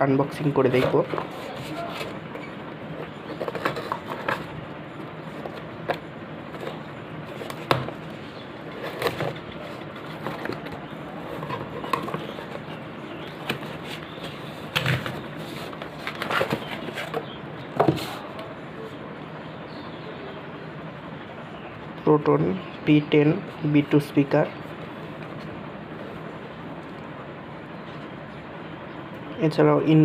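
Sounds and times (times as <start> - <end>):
steady background noise: 0.0 - 30.0
box handling clicks and knocks: 3.0 - 4.6, 5.3 - 8.1, 8.7 - 18.5.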